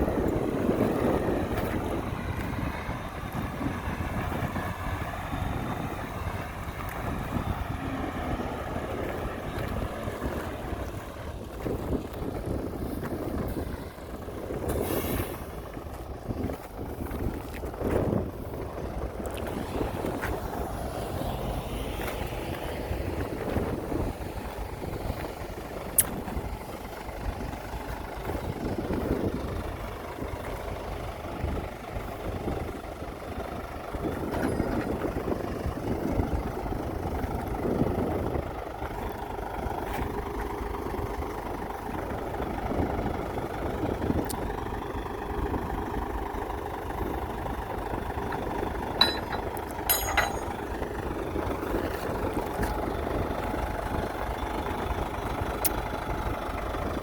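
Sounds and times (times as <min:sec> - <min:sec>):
diesel machinery engine: 0:00.0 - 0:57.0
sharp metallic knocks: 0:49.0 - 0:50.6.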